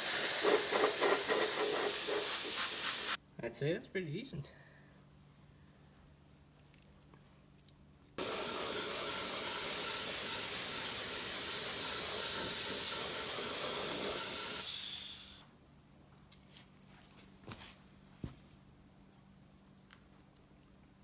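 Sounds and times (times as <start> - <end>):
airbrush spraying hiss: 0.0 - 3.2, 8.2 - 15.4.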